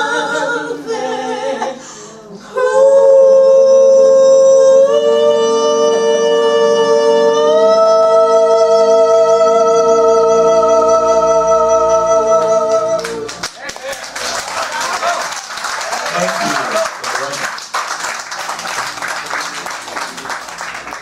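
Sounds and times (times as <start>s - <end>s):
person singing with vibrato: 0.0s - 13.3s.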